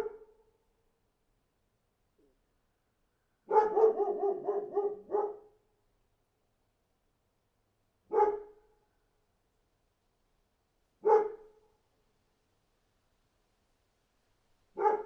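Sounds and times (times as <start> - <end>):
dog barking: 0.0 - 0.4, 3.5 - 5.6, 8.1 - 8.6, 11.0 - 11.6, 14.8 - 15.0.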